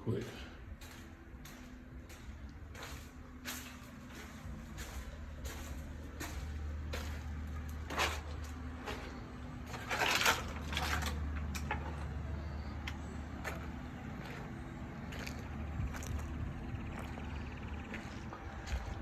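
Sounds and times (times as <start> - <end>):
footsteps: 0.0 - 10.9, 12.9 - 19.0
scuffing bursts: 0.1 - 9.2.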